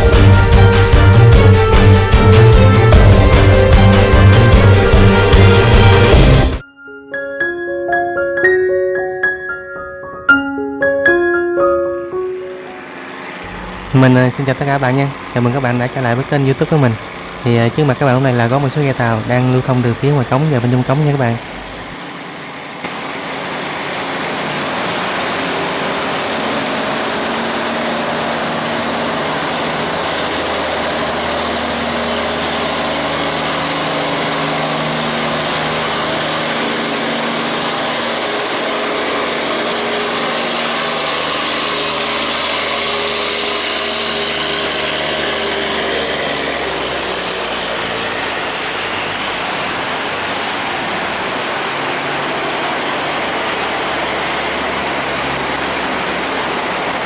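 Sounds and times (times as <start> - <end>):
boat engines running: 0.0 - 6.6, 11.7 - 57.0
faint rising whine: 12.0 - 22.6.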